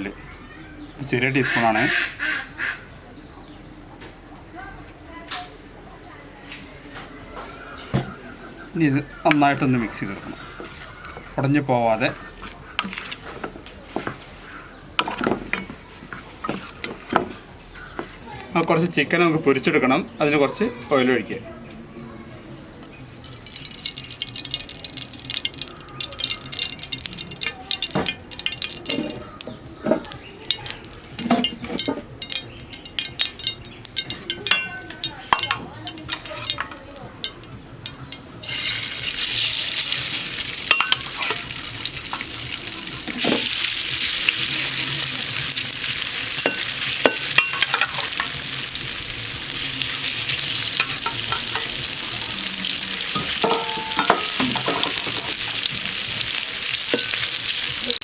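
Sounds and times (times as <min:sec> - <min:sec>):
chicken frying in oil: 0:22.8 - 0:58.0
loud steady sizzle: 0:22.8 - 0:58.0
pan handling clicks and knocks: 0:26.3 - 0:38.7.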